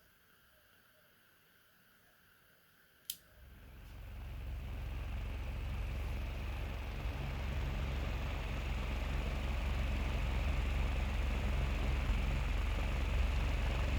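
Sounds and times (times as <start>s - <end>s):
fan motor humming: 3.1s - 13.9s.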